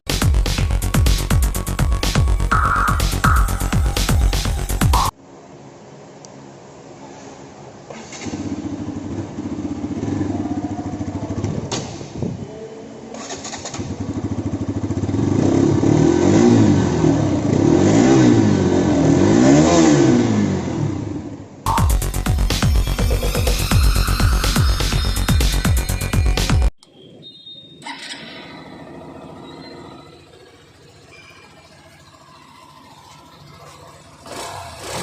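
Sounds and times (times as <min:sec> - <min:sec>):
motorcycle engine idling and revving: 0:00.1 - 0:05.2, 0:08.2 - 0:26.2, 0:28.4 - 0:35.0.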